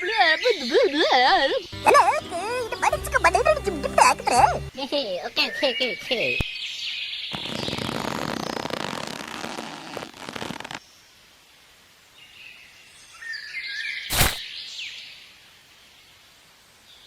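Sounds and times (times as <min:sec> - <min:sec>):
birds chirping: 0:00.0 - 0:08.7
sharp crack: 0:14.1 - 0:14.5.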